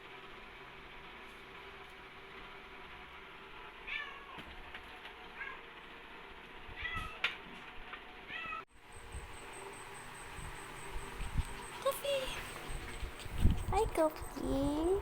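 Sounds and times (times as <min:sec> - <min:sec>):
cat meowing: 0:03.8 - 0:04.4, 0:06.8 - 0:07.4, 0:08.3 - 0:08.6.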